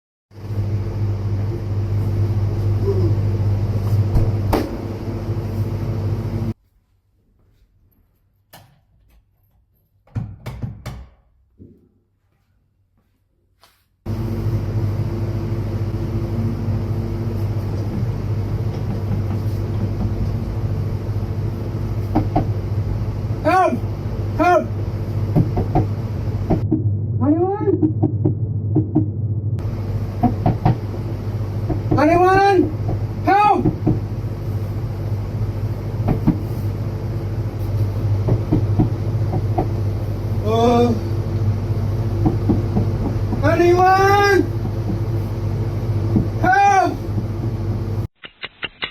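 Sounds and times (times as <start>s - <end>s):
refrigeration machinery hum: 0.3s - 6.6s, 14.1s - 48.1s
knocks: 10.1s - 11.2s.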